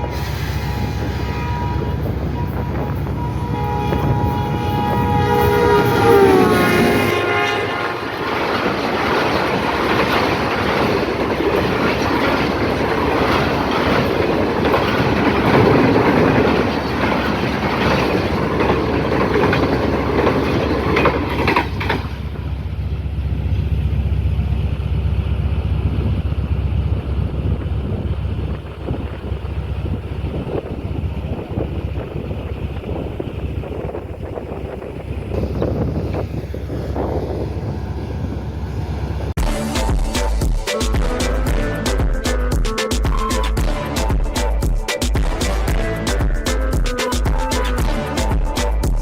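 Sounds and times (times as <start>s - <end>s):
locomotive horn: 0.0s - 8.8s, 39.4s - 49.0s
wind rumble on microphone: 0.0s - 21.2s, 25.2s - 39.5s
train wheels clacking over rail joints: 0.0s - 23.7s.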